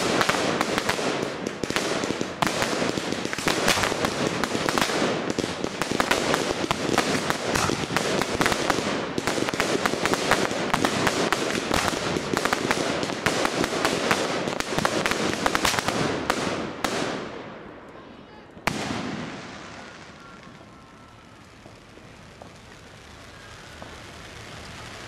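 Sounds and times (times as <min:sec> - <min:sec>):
fireworks banging and crackling: 0:00.0 - 0:25.0.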